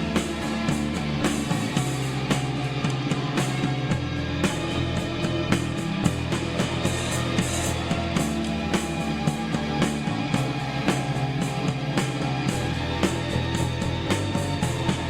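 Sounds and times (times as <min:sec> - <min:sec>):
electric guitar: 0:00.0 - 0:15.0
steady drum beat: 0:00.0 - 0:15.0.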